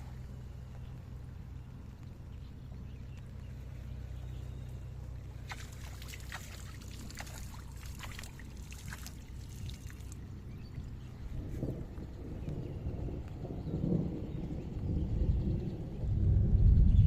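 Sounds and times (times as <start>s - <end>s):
steady low hum: 0.0s - 17.0s
water splashing and dripping: 5.4s - 11.0s.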